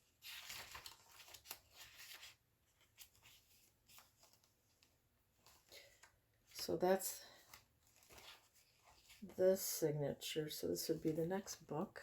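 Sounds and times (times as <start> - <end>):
paper pages rustling: 0.0 - 9.4.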